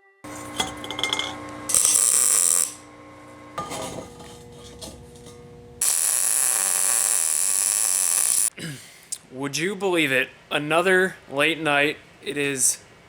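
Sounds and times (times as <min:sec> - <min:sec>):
metal clattering: 0:00.3 - 0:01.4, 0:03.6 - 0:05.6
power tool grinding steel: 0:00.3 - 0:03.0, 0:03.6 - 0:08.5.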